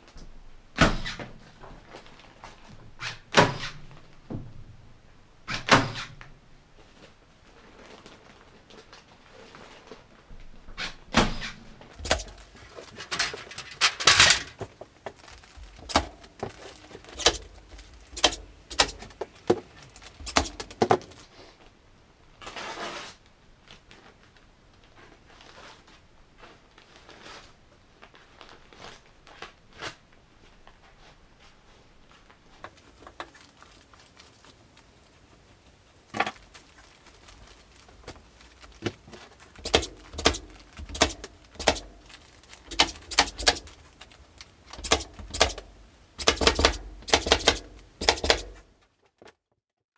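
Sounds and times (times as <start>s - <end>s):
rustling: 11.9s - 21.3s, 32.2s - 49.0s
objects being handled clicking: 12.0s - 21.2s, 36.1s - 48.7s.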